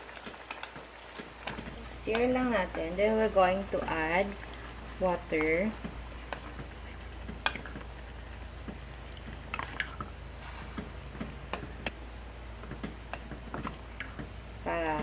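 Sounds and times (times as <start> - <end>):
water poured into a pot: 3.4 - 7.6.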